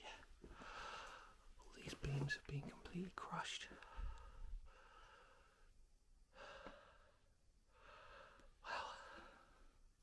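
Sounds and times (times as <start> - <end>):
man breathing hard: 0.4 - 1.4, 3.9 - 9.6.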